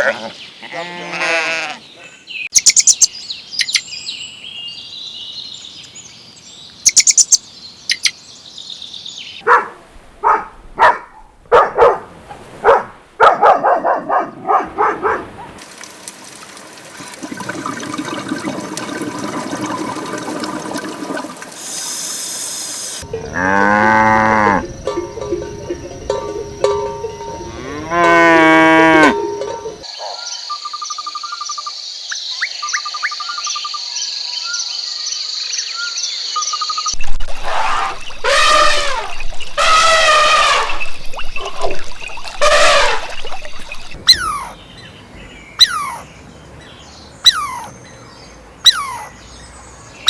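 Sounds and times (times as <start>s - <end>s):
cattle mooing: 0.0s - 1.8s, 23.0s - 24.8s, 27.3s - 29.7s
high-pitched chirring with ticks: 24.5s - 28.4s.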